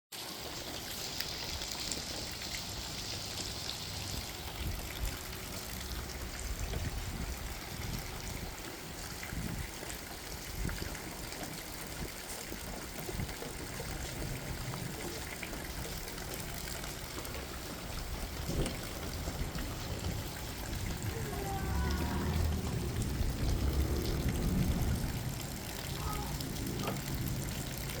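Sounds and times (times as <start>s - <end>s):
water trickling and running: 0.1s - 28.0s
steady rain: 0.2s - 28.0s
low rumble: 17.0s - 28.0s.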